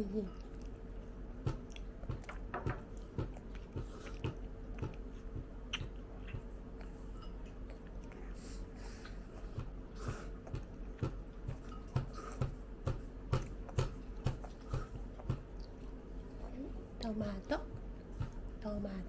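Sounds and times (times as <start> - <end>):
faint steady hum: 0.0 - 19.0
chewing with wet mouth clicks: 0.3 - 8.4, 13.4 - 16.6.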